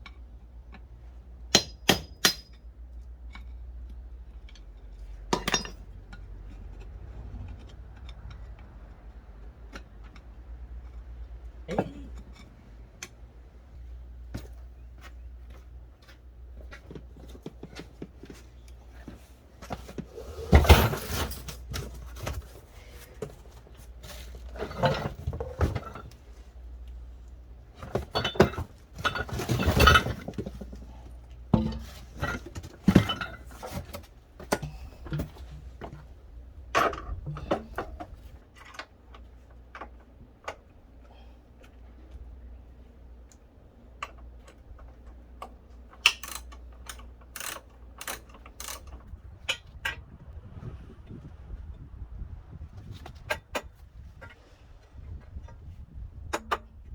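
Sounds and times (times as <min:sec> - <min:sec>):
metal tools clinking and clanking: 0:04.6 - 0:06.8, 0:16.8 - 0:22.6, 0:24.0 - 0:26.2, 0:27.8 - 0:35.6.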